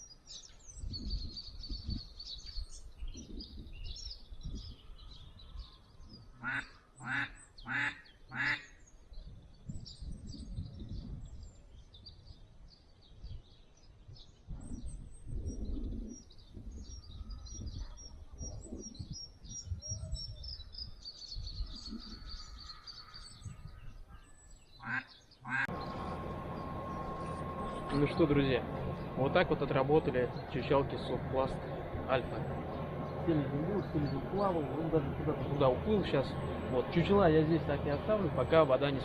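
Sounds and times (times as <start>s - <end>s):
small birds chirping: 0.0s - 39.0s
duck quacking: 6.4s - 8.6s, 24.8s - 25.8s.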